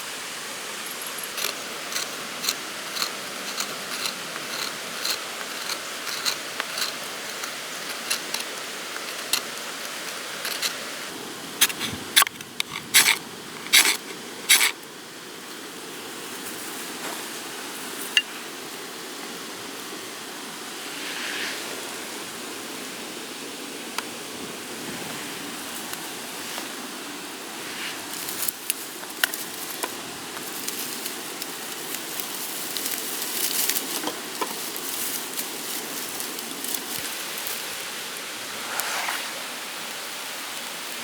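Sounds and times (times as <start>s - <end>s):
steady rain: 0.0s - 41.0s
sharp ticks and crackles: 1.1s - 10.9s, 11.6s - 14.8s, 28.2s - 37.6s.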